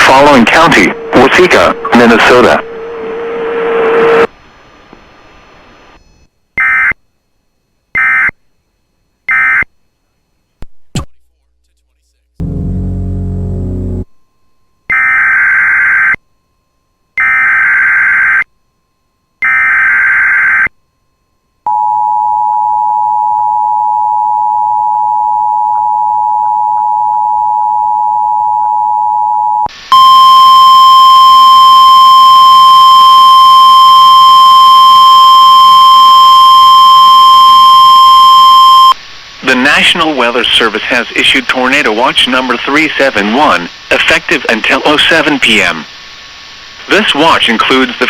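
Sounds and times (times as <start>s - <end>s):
steady alarm tone: 0.0s - 4.3s, 12.4s - 14.1s
warbling data tones: 0.0s - 4.3s.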